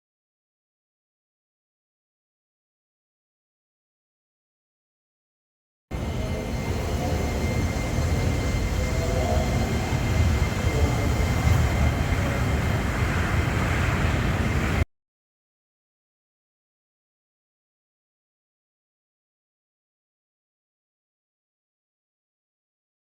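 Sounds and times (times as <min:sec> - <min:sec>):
faint high whine: 0:05.9 - 0:14.8
train rumbling: 0:05.9 - 0:14.8.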